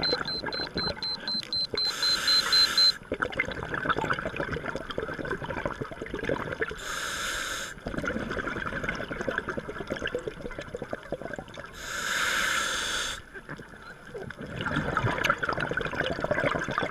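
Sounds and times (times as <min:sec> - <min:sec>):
bubbly crackling underwater: 0:03.0 - 0:06.8, 0:07.8 - 0:11.8, 0:13.3 - 0:16.9
exhaled bubbles bursting: 0:03.0 - 0:06.8, 0:07.8 - 0:11.7, 0:14.4 - 0:16.9.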